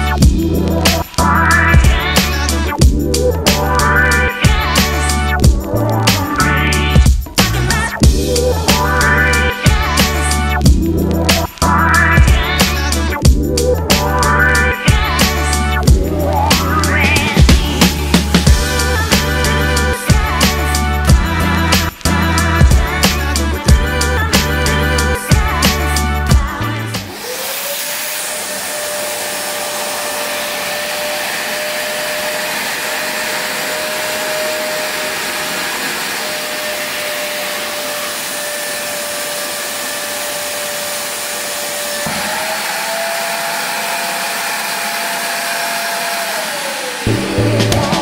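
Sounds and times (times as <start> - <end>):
vacuum cleaner motor whine: 27.1 - 47.2.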